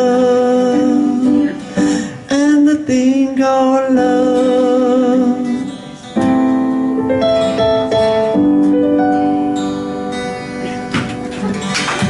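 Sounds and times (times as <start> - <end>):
pop ballad instrumental chords: 0.0 - 12.0.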